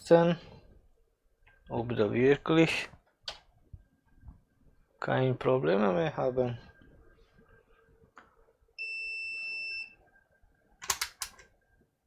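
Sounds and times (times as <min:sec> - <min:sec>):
sharp clicks: 0:10.8 - 0:11.5.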